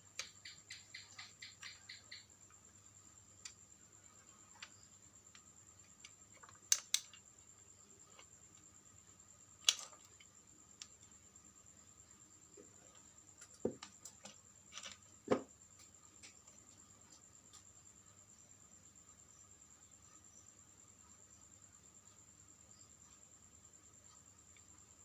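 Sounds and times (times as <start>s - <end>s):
faint high-pitched whine: 0.0s - 25.0s
clicks of small tools and parts: 6.0s - 7.2s, 9.6s - 10.9s, 13.4s - 15.0s.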